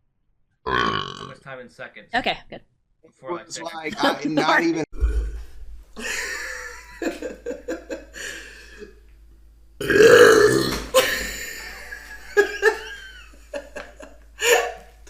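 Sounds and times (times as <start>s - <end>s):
woman burping: 0.7s - 1.3s, 9.8s - 11.0s.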